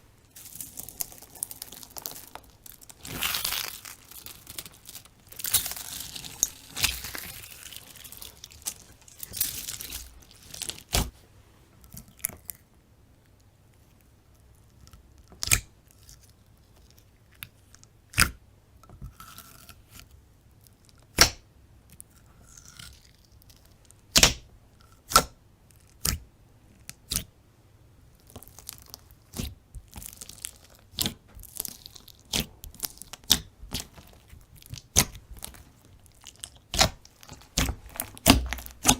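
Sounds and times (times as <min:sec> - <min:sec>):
slime crackling and popping: 0:00.3 - 0:11.1, 0:28.1 - 0:38.9.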